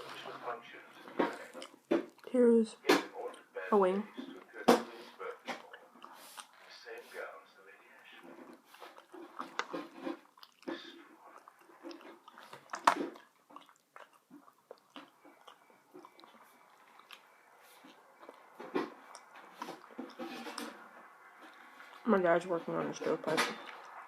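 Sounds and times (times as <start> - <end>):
person chewing and biting: 5.4 - 6.6, 8.3 - 22.0.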